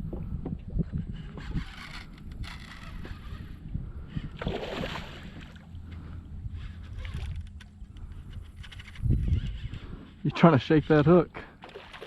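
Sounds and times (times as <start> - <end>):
low steady rumble: 0.0 - 11.6
fish thrashing and splashing: 4.4 - 5.7.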